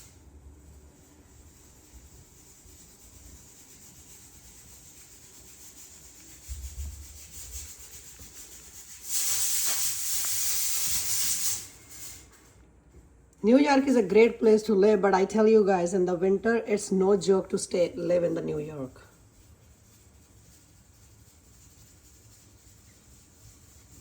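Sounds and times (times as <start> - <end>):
faint steady hiss: 0.0 - 24.0
loud high-pitched hiss: 9.0 - 11.8.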